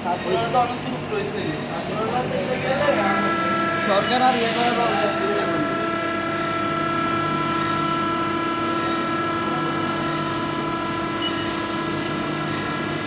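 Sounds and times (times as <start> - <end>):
machine droning: 2.8 - 13.0.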